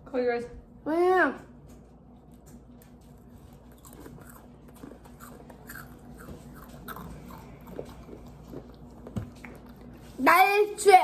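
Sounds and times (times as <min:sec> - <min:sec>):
person crunching potato chips: 0:03.5 - 0:09.0.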